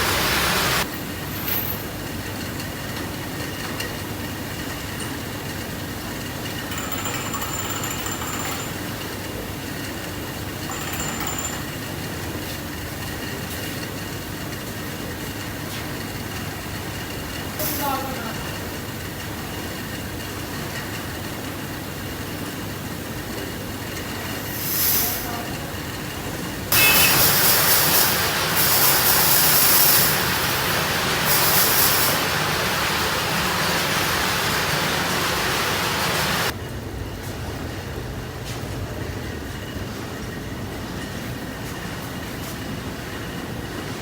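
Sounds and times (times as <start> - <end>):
loud hiss: 0.0 - 0.8, 24.5 - 25.4, 26.7 - 36.5
steady machine noise: 0.0 - 0.9, 26.2 - 37.0.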